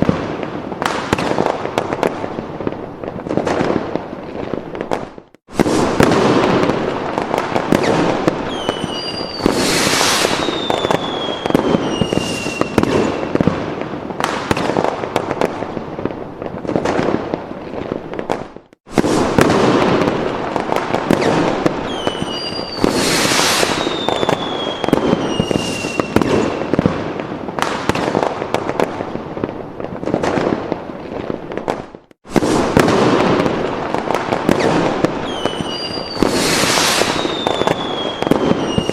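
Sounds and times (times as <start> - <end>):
fireworks crackling and popping: 0.0 - 38.9
fireworks whistles gliding down: 4.4 - 13.6, 17.9 - 28.8, 31.6 - 38.9.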